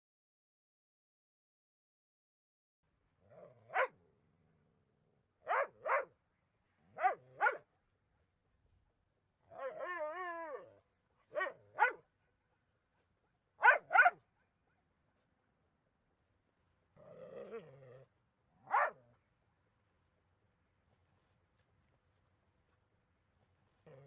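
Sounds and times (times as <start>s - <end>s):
dog barking: 3.4s - 4.0s, 5.4s - 6.2s, 6.9s - 7.7s, 11.3s - 12.1s, 13.6s - 14.3s, 18.6s - 19.1s.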